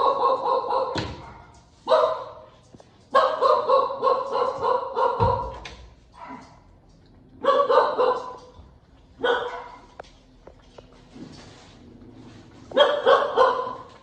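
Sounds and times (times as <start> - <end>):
puppy barking: 0.0 - 2.5, 3.1 - 5.6, 7.4 - 8.6, 9.2 - 10.0, 12.7 - 14.0.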